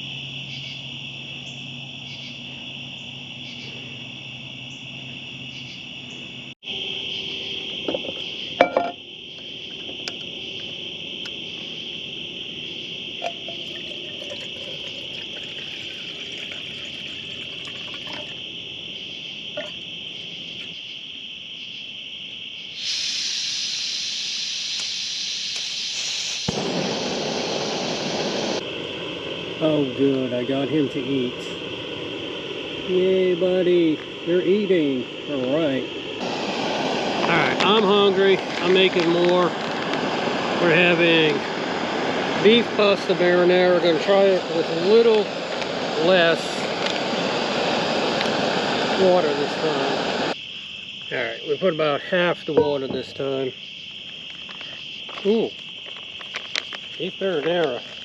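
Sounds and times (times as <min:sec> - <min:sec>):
fast pulsing insect sound: 0:00.0 - 0:58.0
insects trilling: 0:00.0 - 0:58.0
broad hiss: 0:22.8 - 0:35.5, 0:36.2 - 0:50.4.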